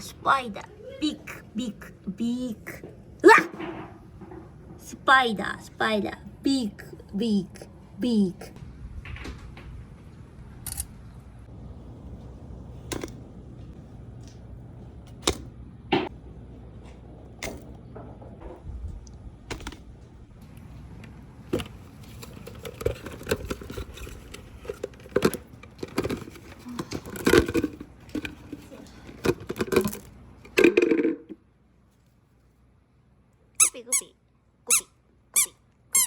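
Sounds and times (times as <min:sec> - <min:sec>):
low steady hum: 0:00.0 - 0:36.0.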